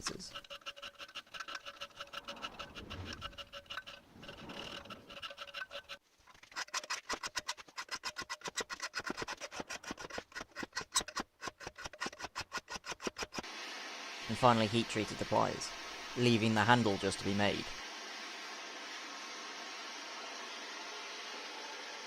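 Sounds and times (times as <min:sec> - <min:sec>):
scraping strokes on metal: 0:00.0 - 0:13.4.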